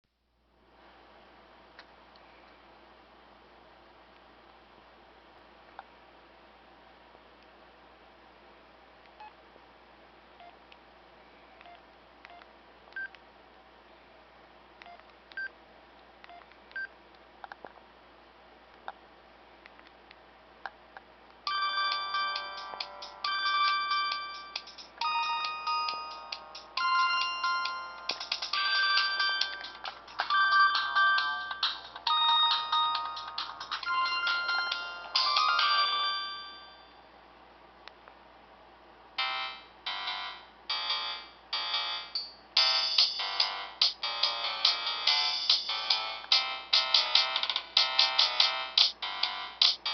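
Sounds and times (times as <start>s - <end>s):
synthesized phone ringtone melody: 21.5s - 36.9s.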